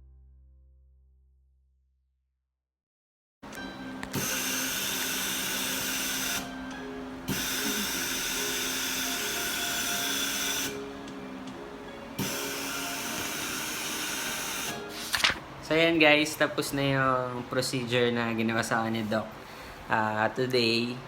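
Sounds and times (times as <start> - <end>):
dental drill whining: 3.5 - 16.4.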